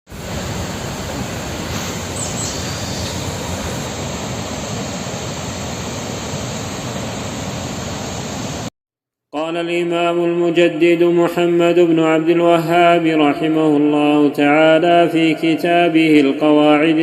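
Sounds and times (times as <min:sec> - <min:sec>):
waterfall rushing: 0:00.1 - 0:08.7.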